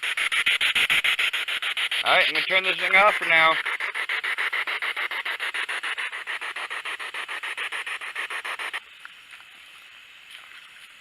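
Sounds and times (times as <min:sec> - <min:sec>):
faint hiss: 0:00.0 - 0:11.0
radio static bursts: 0:00.2 - 0:08.8.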